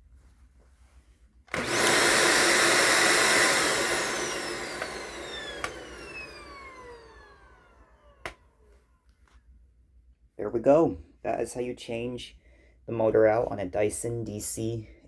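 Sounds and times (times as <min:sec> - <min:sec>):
motor whine spinning down: 0:01.5 - 0:08.4
vacuum cleaner motor running: 0:01.5 - 0:08.6.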